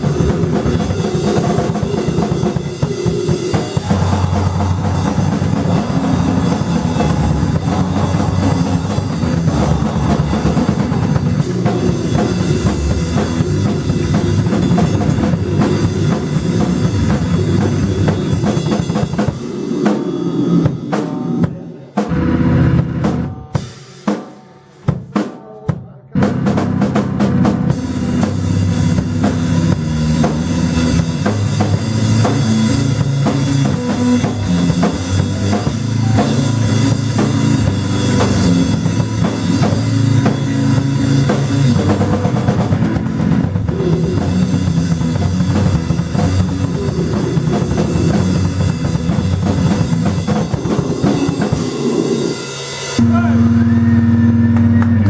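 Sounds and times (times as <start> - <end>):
drum hits: 0.0 - 19.4
live band playing noise rock: 0.0 - 25.0, 26.2 - 55.0.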